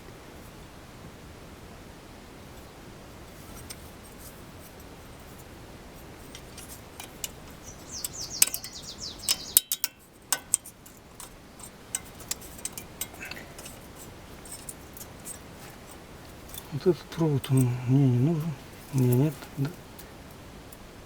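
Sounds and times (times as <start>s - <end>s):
metallic clicks and scrapes: 3.4s - 16.8s
rapid high ticks: 6.0s - 17.7s.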